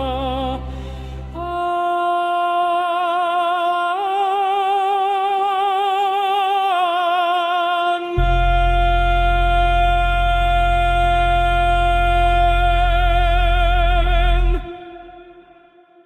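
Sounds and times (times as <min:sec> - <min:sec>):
wordless singing voice: 0:00.0 - 0:16.0
low drone: 0:08.2 - 0:15.7.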